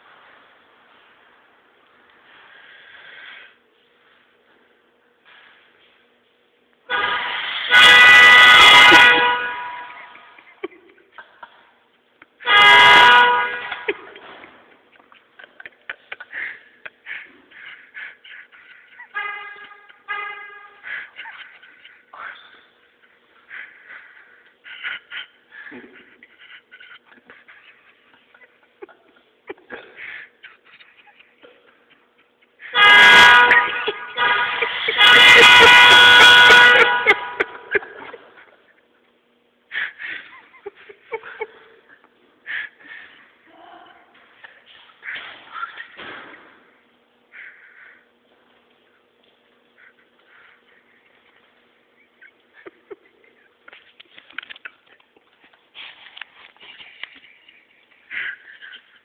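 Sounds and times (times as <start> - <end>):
car horn blasts: 6.9 - 10.4, 12.4 - 14.2, 19.0 - 20.8, 32.6 - 37.8.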